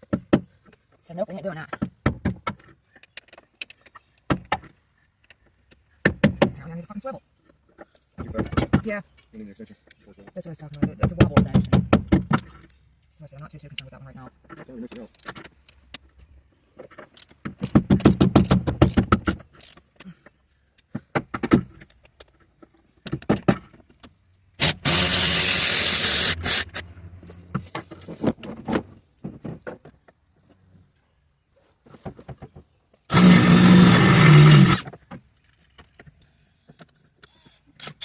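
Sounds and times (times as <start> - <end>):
tools and parts clinking: 14.4 - 17.8, 18.4 - 20.9
power tool bursts: 24.6 - 26.8, 33.1 - 34.9.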